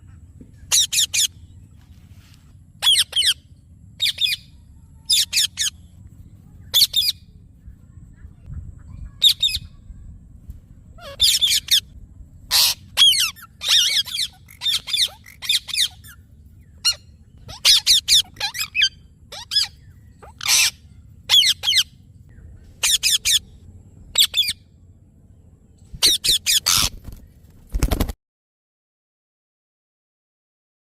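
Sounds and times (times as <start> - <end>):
parrot squawking: 0.7 - 1.3, 2.8 - 3.4, 4.0 - 5.8, 6.7 - 7.2, 8.8 - 9.7, 11.0 - 11.9, 12.5 - 16.2, 16.8 - 21.9, 22.8 - 23.5, 24.2 - 24.6, 26.0 - 27.0.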